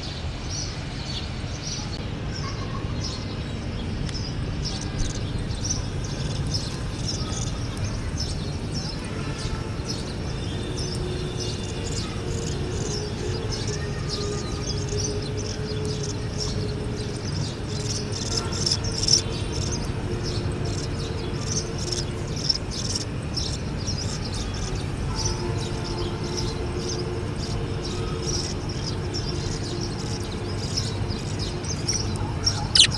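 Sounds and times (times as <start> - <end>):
budgerigars chirping: 17.2 - 19.7, 20.7 - 24.2, 31.4 - 32.9.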